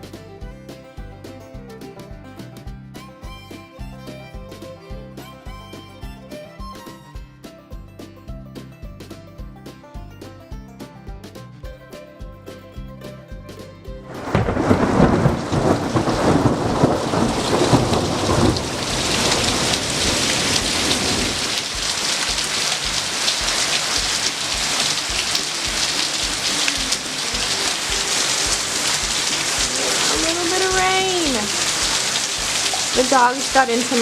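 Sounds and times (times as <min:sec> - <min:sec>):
deep rumble: 0:14.1 - 0:34.0
heavy rain falling: 0:14.1 - 0:34.0.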